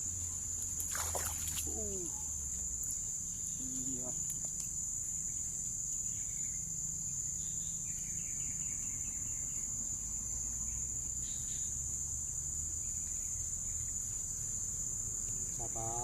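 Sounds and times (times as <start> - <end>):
faint chirping calls: 0.0 - 11.8
insect chorus drone: 0.0 - 16.0.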